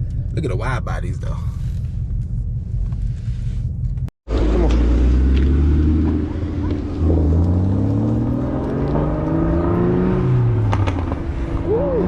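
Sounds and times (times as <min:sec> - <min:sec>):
car engine accelerating: 0:03.9 - 0:12.0.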